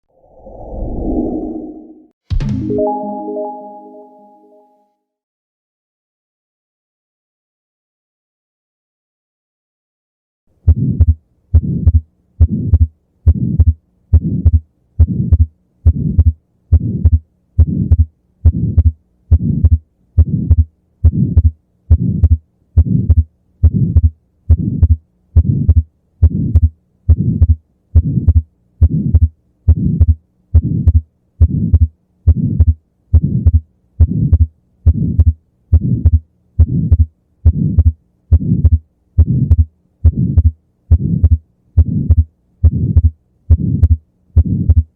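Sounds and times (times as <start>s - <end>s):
heartbeat through stethoscope: 10.6s - 44.9s.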